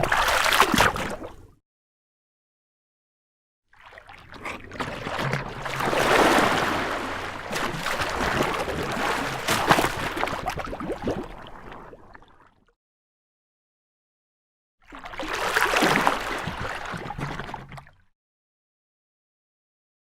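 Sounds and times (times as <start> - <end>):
water sloshing and splashing: 0.0 - 1.6, 3.7 - 12.7, 14.8 - 18.1.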